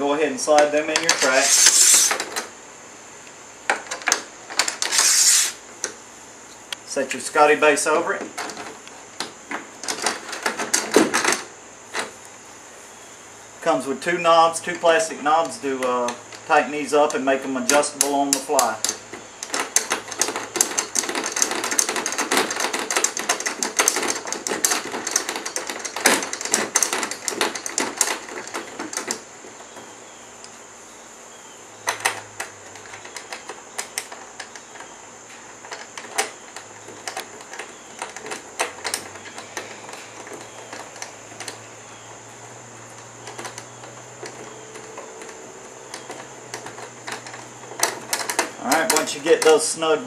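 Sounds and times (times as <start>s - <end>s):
plastic and metal parts clicking: 17.7s - 29.8s, 31.8s - 34.9s, 35.6s - 41.6s, 42.9s - 49.7s.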